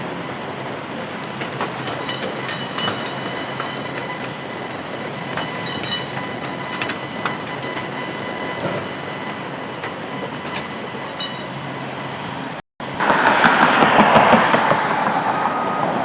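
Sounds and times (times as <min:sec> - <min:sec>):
steady mechanical noise: 0:00.0 - 0:16.0
high squealing tones: 0:01.2 - 0:12.3.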